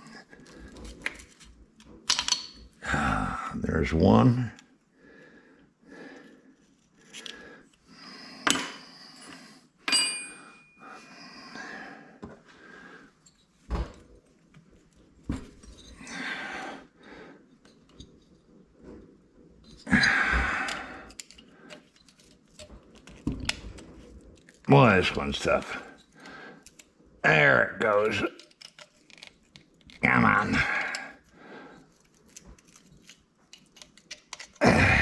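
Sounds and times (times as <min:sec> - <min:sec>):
metal tools clinking and knocking: 0:01.0 - 0:02.8, 0:09.9 - 0:10.8.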